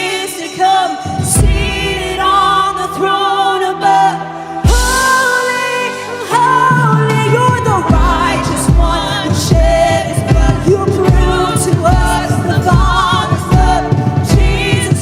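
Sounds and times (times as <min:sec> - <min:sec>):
people singing: 0:00.0 - 0:15.0
drum and bass beat: 0:04.7 - 0:05.6, 0:06.3 - 0:15.0.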